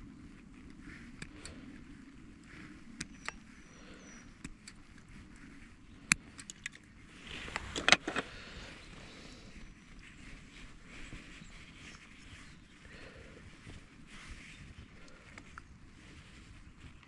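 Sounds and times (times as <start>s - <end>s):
sharp clicks and light rattles: 2.9s - 6.9s.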